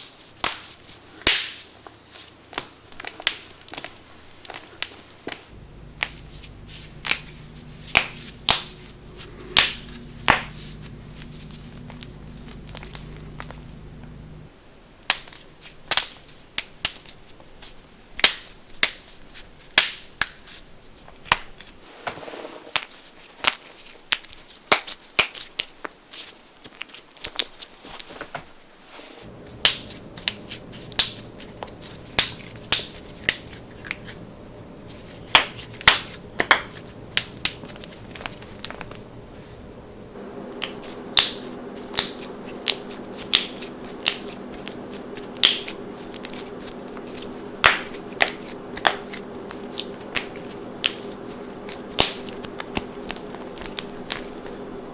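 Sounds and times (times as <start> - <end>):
low steady hum: 5.5 - 15.0, 29.2 - 54.9.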